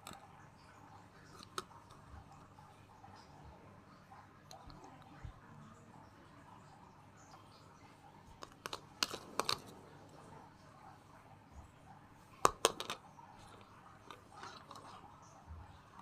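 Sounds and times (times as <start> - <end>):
small hard objects clicking: 12.4 - 13.0.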